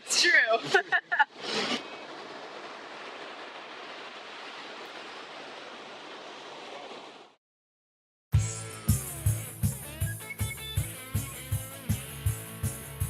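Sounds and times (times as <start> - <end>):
ocean surf washing on beach: 0.0 - 7.4
music with guitar and drums: 8.4 - 13.0.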